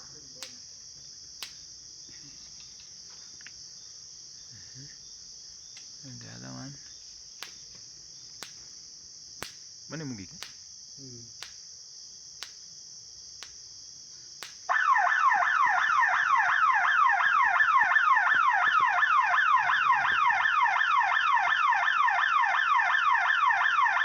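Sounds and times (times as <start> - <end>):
electric fence ticking: 1.4 - 1.7, 7.4 - 8.7, 9.4 - 10.8, 11.4 - 11.6, 12.4 - 12.7, 13.4 - 13.6, 14.4 - 14.7
alarm siren wailing: 14.7 - 24.0.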